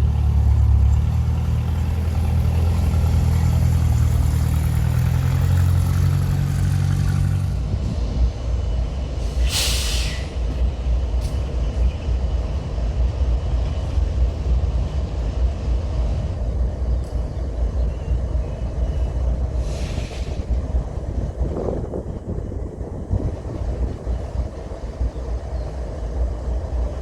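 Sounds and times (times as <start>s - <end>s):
diesel locomotive engines droning: 0.0s - 27.0s
low rumble of train: 0.0s - 27.0s
air brake hiss: 9.2s - 10.4s, 19.6s - 20.6s.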